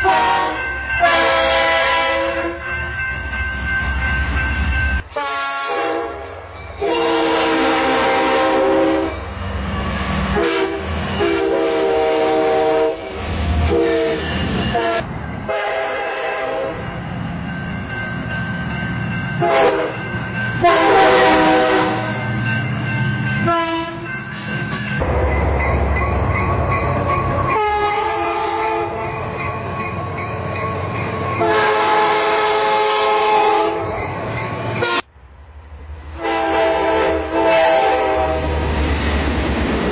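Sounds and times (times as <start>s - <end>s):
train horn blasts: 0.0s - 2.6s, 5.1s - 9.2s, 10.3s - 16.9s, 19.4s - 20.0s, 20.6s - 22.2s, 23.4s - 24.1s, 27.6s - 29.0s, 31.4s - 33.9s, 34.8s - 35.1s, 36.2s - 38.6s
crossing signal bell ringing: 0.0s - 7.8s, 14.2s - 35.0s
train rumble: 0.0s - 39.9s.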